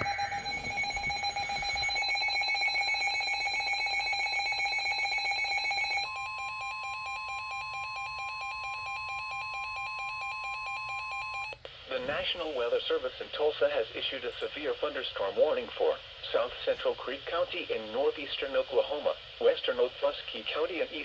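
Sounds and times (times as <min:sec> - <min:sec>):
pulsing electronic alert tones: 0:00.0 - 0:11.1.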